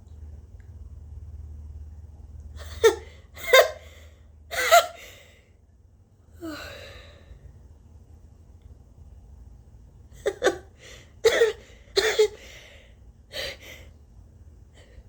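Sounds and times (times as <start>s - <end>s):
woman gasping inhales: 6.4s - 7.4s.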